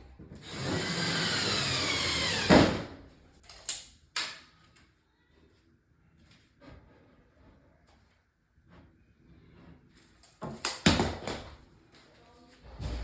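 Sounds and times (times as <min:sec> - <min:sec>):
electric drill running: 0:00.4 - 0:02.9.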